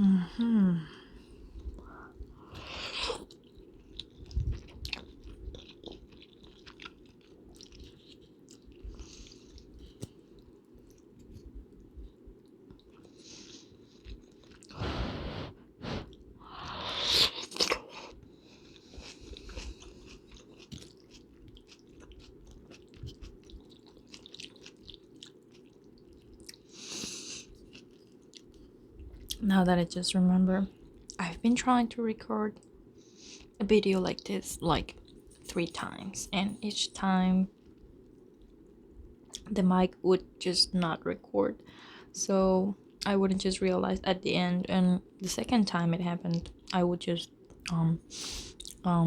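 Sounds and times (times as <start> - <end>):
low background hum: 0.0 - 49.0
chewing and biting: 2.6 - 14.8, 17.2 - 29.4.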